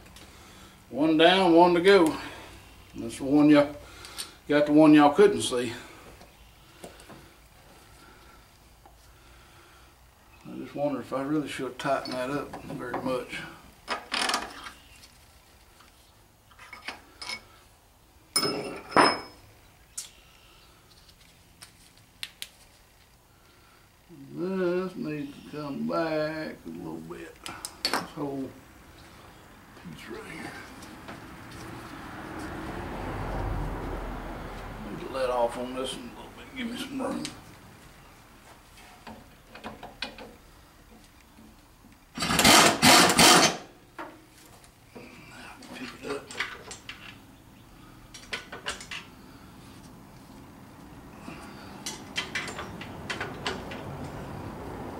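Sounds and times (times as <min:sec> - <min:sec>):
metal tools clinking and clanking: 0:16.6 - 0:17.5, 0:18.3 - 0:19.5, 0:51.8 - 0:53.8
loud rasping burst: 0:42.2 - 0:43.7.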